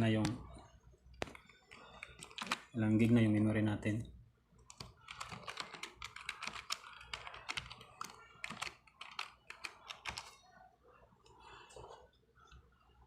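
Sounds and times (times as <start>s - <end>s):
computer keyboard typing: 1.2s - 2.7s, 4.7s - 10.4s.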